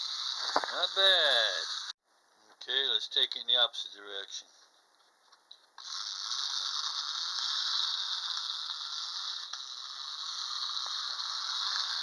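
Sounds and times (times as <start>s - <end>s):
wind-up toy whirring rattle: 0.0s - 1.9s, 5.8s - 12.0s.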